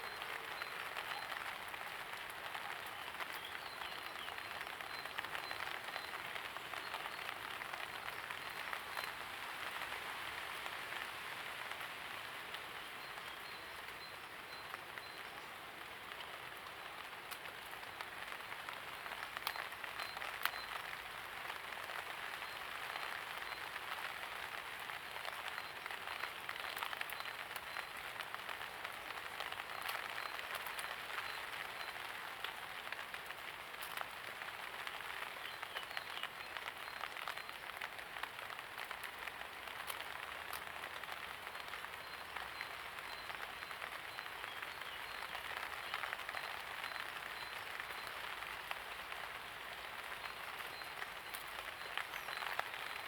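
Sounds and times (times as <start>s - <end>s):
light rain falling: 0.0s - 53.0s
sharp water drips: 12.5s - 53.0s.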